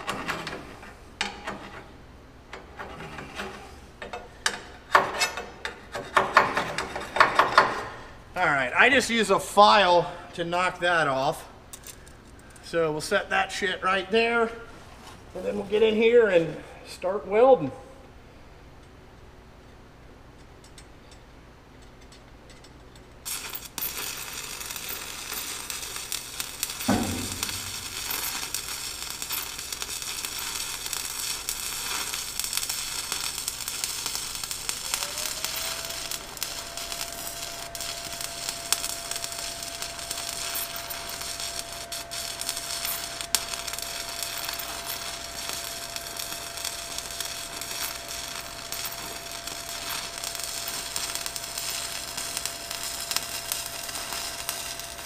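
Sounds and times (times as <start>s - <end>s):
welding arc crackling sizzle: 6.1s - 14.7s, 23.2s - 55.0s.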